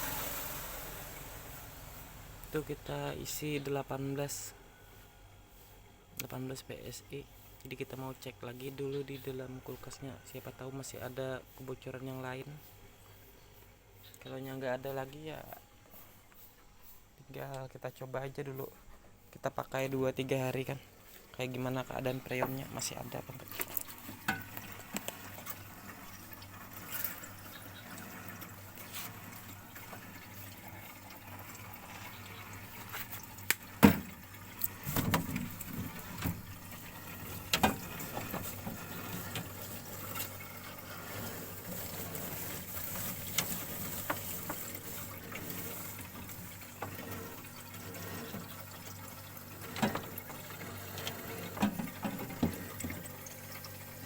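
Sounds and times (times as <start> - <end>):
refrigerant gurgling in tubing: 21.7 - 54.0.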